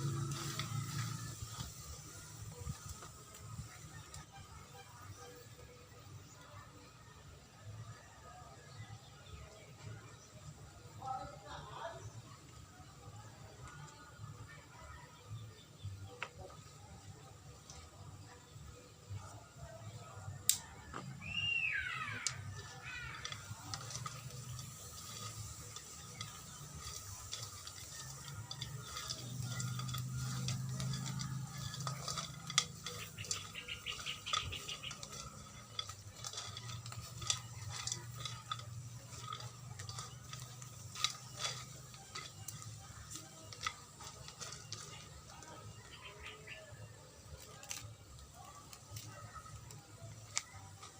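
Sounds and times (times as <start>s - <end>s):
pot and utensils clinking: 22.2s - 46.5s.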